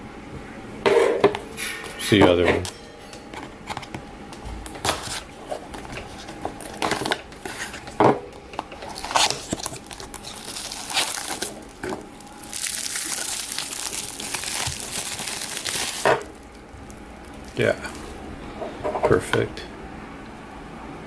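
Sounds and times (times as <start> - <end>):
plastic packaging crinkling: 4.6 - 18.2.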